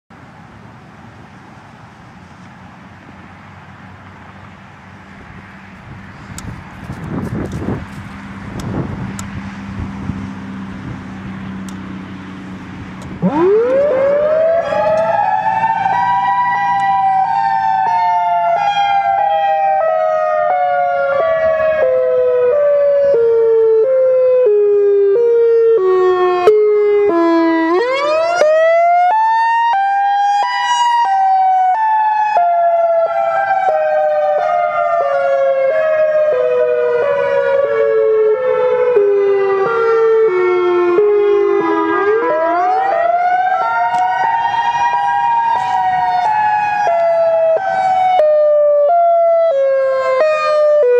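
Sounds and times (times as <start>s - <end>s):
warning siren wailing: 5.6s - 50.9s.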